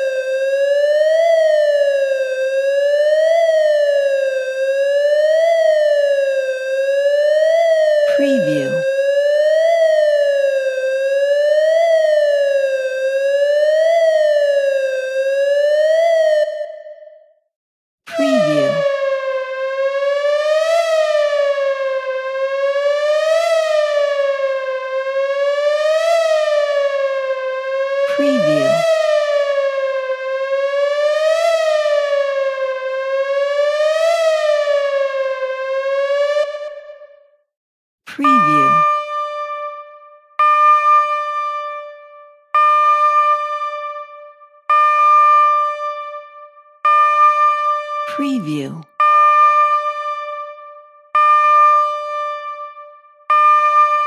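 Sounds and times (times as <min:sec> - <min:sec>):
ambulance siren wailing: 0:00.0 - 0:16.8, 0:18.2 - 0:36.8.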